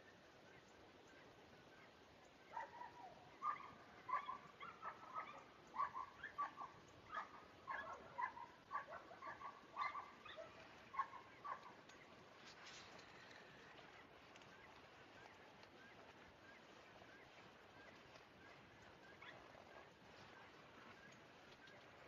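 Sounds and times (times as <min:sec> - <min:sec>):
dog barking in short yips: 0:02.5 - 0:11.7.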